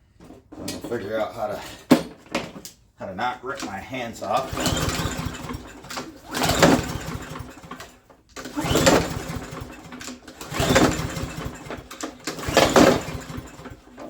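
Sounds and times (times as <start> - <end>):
mower engine cranking: 3.5 - 14.0.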